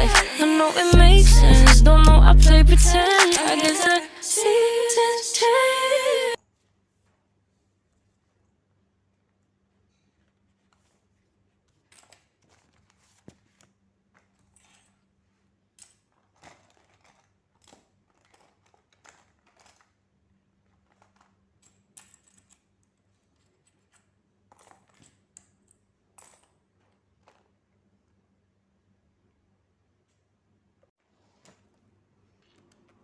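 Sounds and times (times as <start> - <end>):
papers rustling and clicking: 10.2 - 20.0, 20.6 - 25.4.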